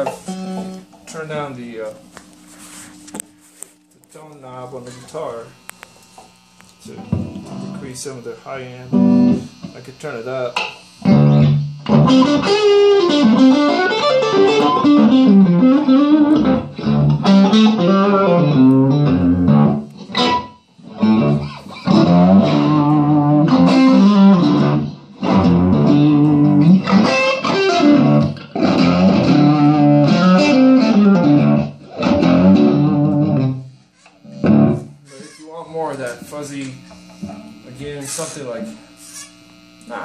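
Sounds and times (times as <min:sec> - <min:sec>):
overdriven electric guitar: 0:00.0 - 0:01.2, 0:05.4 - 0:35.0, 0:36.6 - 0:40.0.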